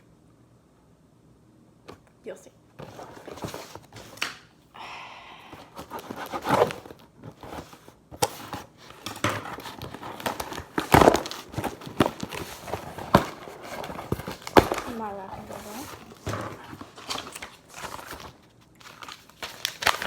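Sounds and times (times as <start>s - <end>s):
wrapping paper tearing and crumpling: 8.4s - 20.0s.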